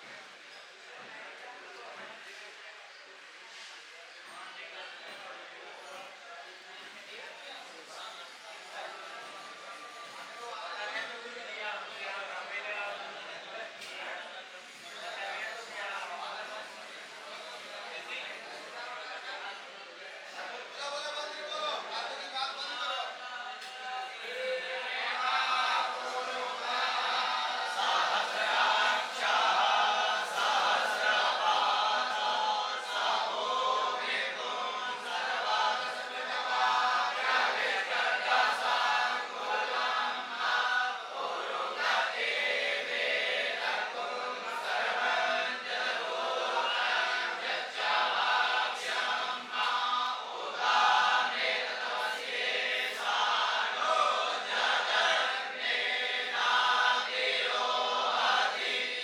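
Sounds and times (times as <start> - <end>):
group chanting in unison: 24.2 - 59.0.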